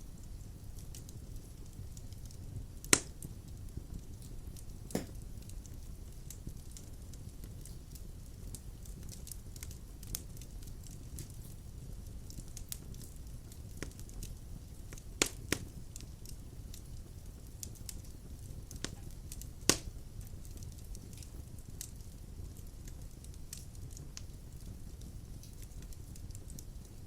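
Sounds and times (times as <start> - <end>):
fire low rumble: 0.0 - 27.0
wood fire crackling: 0.0 - 27.0
fire loud pops: 4.9 - 5.2, 19.7 - 19.9.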